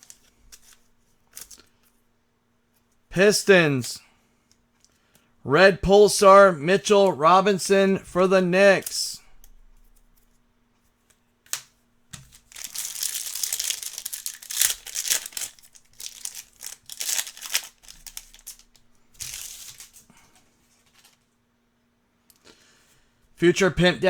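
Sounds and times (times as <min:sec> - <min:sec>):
foil wrapper tearing and crinkling: 0:00.0 - 0:01.7, 0:12.2 - 0:20.0.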